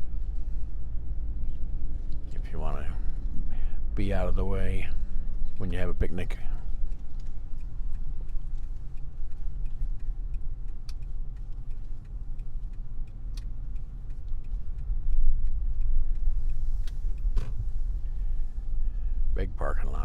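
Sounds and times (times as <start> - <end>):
road and engine rumble: 0.0 - 20.0
light clicks: 6.2 - 18.6.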